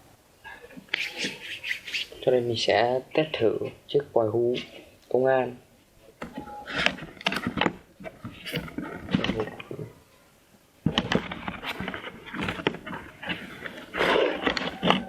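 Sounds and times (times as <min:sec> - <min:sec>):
packaging being handled: 0:06.2 - 0:09.7, 0:10.9 - 0:15.0.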